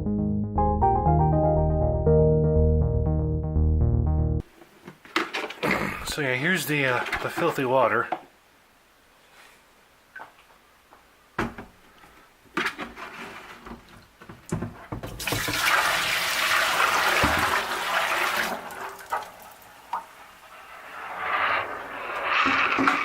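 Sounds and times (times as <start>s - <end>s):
running water: 15.1s - 20.4s.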